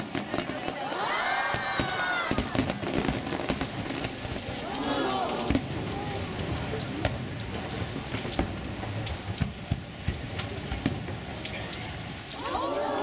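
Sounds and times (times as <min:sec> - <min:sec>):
fireworks sharp pops: 0:00.0 - 0:12.3
fireworks crackling and fizzing: 0:00.0 - 0:13.0.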